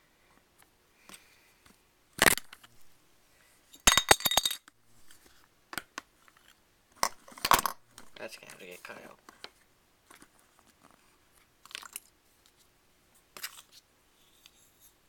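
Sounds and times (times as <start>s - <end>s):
small metal clinking on hard surface: 3.9s - 4.7s.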